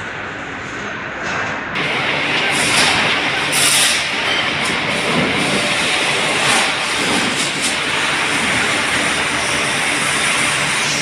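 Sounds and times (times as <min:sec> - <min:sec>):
heavy machine roaring: 0:01.8 - 0:11.0.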